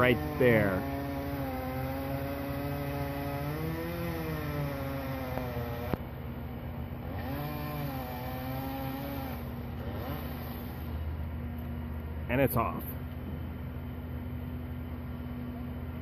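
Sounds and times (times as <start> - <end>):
chainsaw cutting through branch: 0.0 - 6.0, 7.0 - 11.1.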